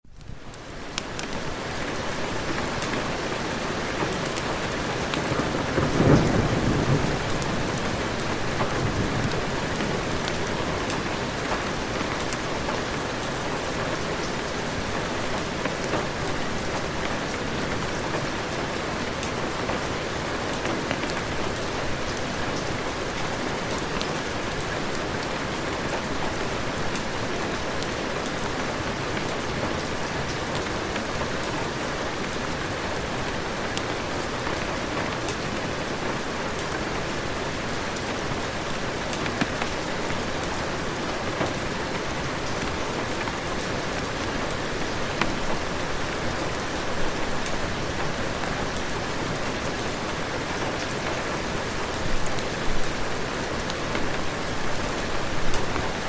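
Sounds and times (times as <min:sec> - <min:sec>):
heavy rain: 0:00.0 - 0:56.0
thunder rumbling: 0:05.4 - 0:10.3.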